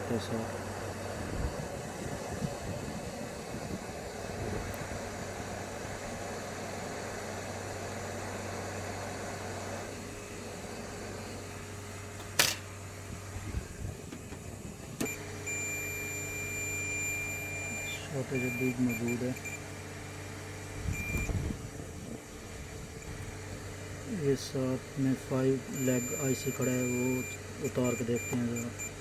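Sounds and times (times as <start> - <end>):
sharp click: 12.2 - 12.7
multimeter continuity beep: 15.0 - 19.6, 20.9 - 21.4, 25.6 - 29.0.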